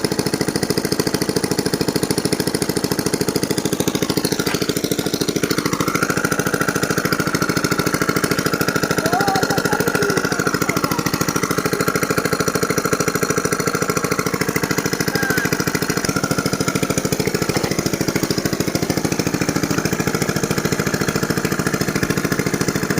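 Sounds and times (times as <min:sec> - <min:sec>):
small engine chugging: 0:00.0 - 0:22.9.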